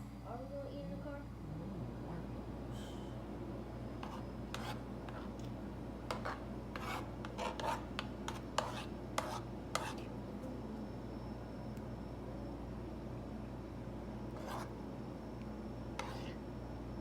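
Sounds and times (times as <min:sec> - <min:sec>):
steady low hum: 0:00.0 - 0:17.0
utensils scraping a pan: 0:04.0 - 0:05.5, 0:06.1 - 0:10.0, 0:16.0 - 0:16.4.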